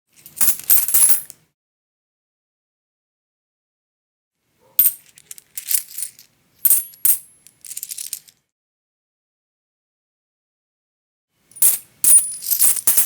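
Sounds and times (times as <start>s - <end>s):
coins clinking and jingling: 0.2s - 1.3s, 4.8s - 8.4s, 11.5s - 13.0s.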